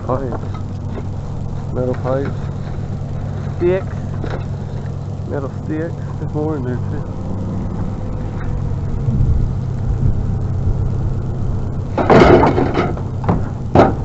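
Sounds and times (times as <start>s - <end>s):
vehicle engine idling: 0.0s - 14.0s
metal pipes clattering: 11.9s - 14.0s
sharp metal clanks: 11.9s - 14.0s.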